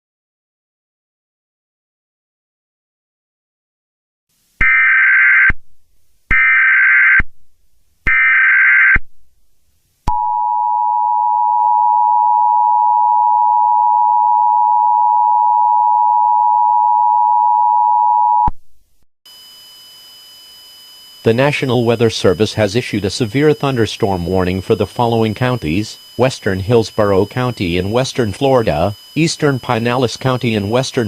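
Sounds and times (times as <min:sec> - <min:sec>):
screechy data bursts: 0:19.3 - 0:31.0
two-tone attention signal: 0:19.3 - 0:31.0.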